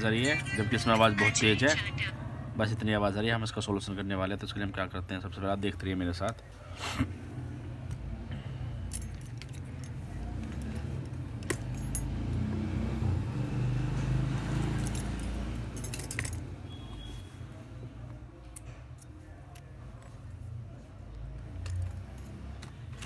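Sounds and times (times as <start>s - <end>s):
small metal tools clinking: 8.8s - 12.4s, 14.4s - 17.2s.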